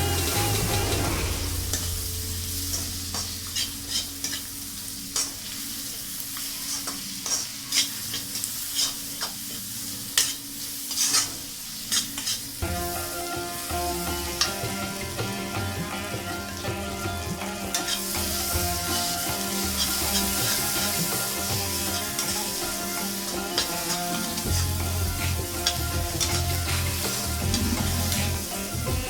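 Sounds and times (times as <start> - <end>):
food sizzling in oil: 0.0 - 29.0
spoon scraping and tapping pan: 6.6 - 12.5.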